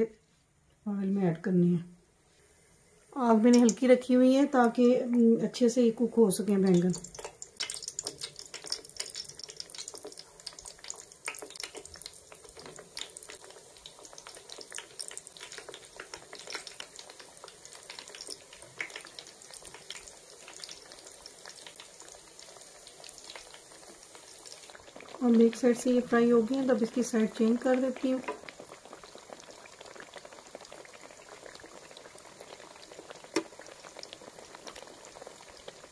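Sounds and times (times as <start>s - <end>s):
battered vegetables frying in oil: 3.2s - 35.9s.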